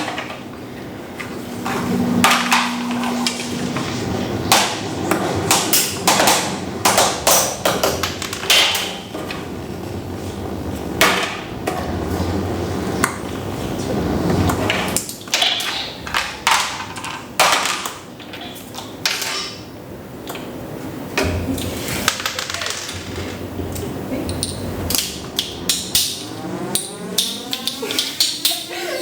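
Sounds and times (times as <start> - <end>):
low hum: 0.5 - 5.6.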